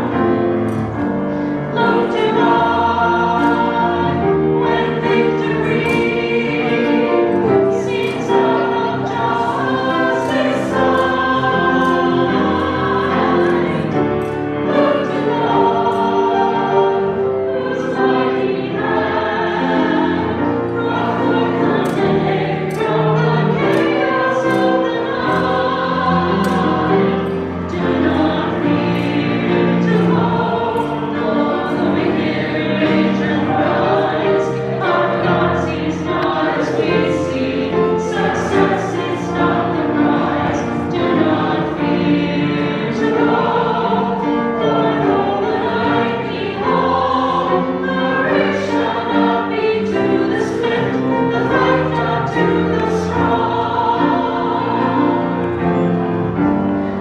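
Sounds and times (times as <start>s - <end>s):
choir singing a hymn: 0.0s - 57.0s.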